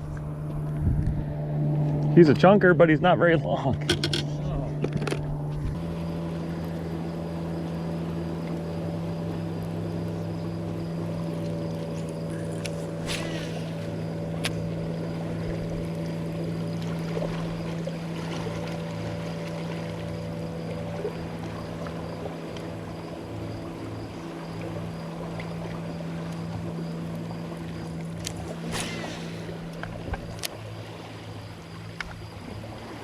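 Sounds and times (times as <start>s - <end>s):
boat motor running: 0.0s - 33.0s.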